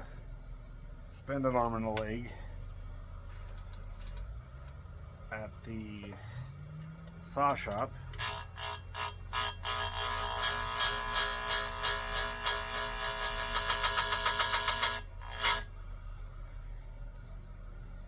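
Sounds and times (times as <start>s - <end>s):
chainsaw chain being sharpened: 8.2s - 15.7s.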